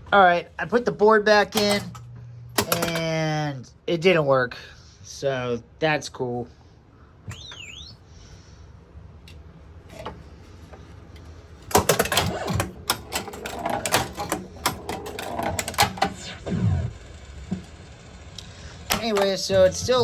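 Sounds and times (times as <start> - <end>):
pinball machine clacks and knocks: 2.6 - 3.1, 11.7 - 16.2, 18.9 - 19.5.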